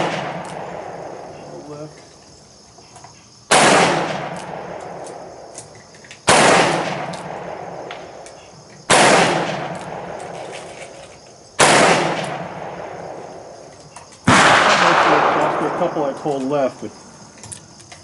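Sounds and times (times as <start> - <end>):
revolver shots with echo: 14.3 - 15.9.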